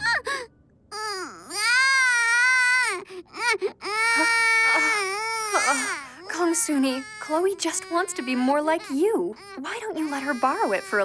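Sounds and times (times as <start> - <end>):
toddler crying and wailing: 0.0 - 11.0.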